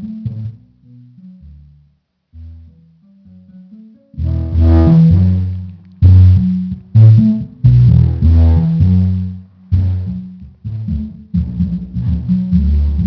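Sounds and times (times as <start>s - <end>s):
bass-heavy music through computer speakers: 0.0s - 1.4s, 4.2s - 13.0s.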